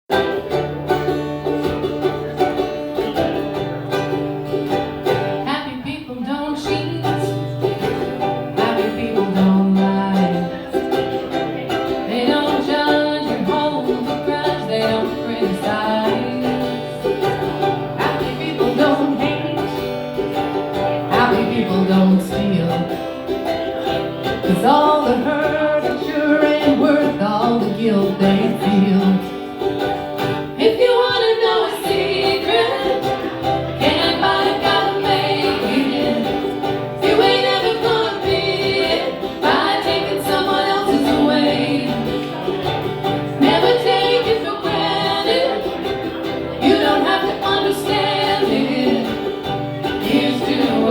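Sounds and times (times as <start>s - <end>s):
acoustic plucked strings: 0.1s - 50.9s
person singing: 8.5s - 11.0s, 11.7s - 20.0s, 21.0s - 23.1s, 24.3s - 29.4s, 43.3s - 50.9s.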